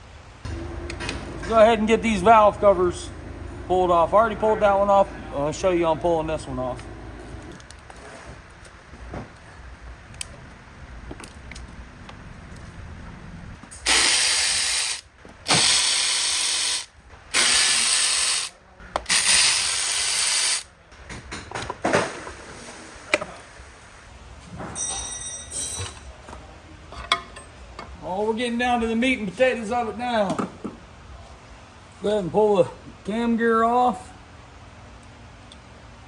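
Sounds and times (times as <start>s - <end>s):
power ratchet spinning: 13.8s - 20.7s
metal clinks of tools: 24.7s - 26.2s.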